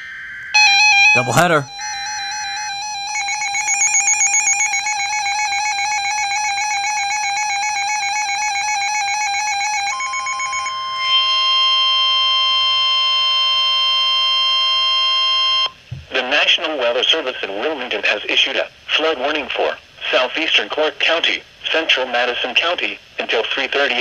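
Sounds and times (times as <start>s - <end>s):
high ringing tone: 0.0s - 15.7s
steady alert tone: 0.6s - 4.7s
warbling electronic alert tone: 0.6s - 6.4s.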